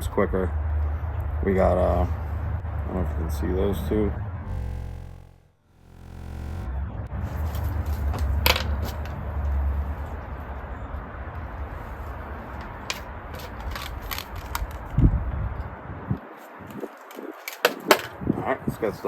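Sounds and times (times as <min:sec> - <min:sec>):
low rumble on microphone: 0:00.6 - 0:10.5.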